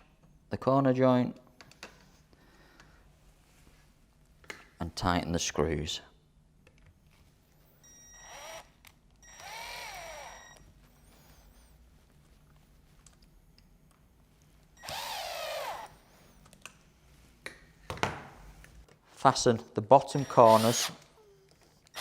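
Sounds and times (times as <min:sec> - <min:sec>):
cordless drill driving screws: 0:08.2 - 0:10.6, 0:14.8 - 0:15.9, 0:20.1 - 0:21.1.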